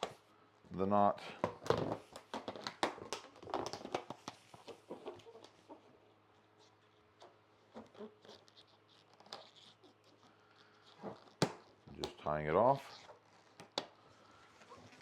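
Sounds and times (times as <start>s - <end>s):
balloons squeaking and rubbing: 4.5s - 12.0s, 12.6s - 15.0s.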